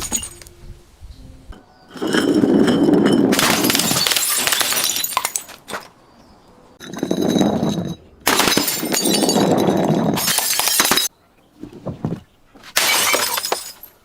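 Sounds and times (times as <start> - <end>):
glass bottles smashing: 0.0 - 0.5, 1.9 - 5.9, 6.8 - 11.1, 12.8 - 14.0.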